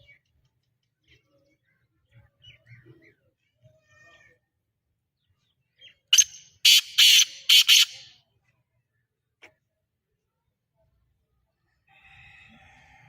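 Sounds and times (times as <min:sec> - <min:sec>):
bird harsh rasping call: 0:06.2 - 0:08.1.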